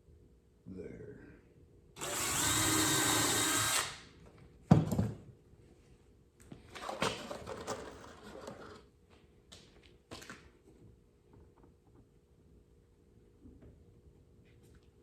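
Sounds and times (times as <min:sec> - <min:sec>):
wood and tools clattering: 0:06.6 - 0:08.9.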